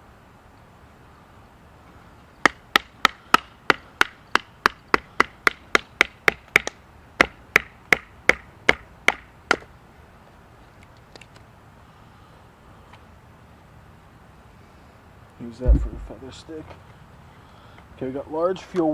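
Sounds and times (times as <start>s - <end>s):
wooden baton knocking on knife: 15.7s - 16.2s.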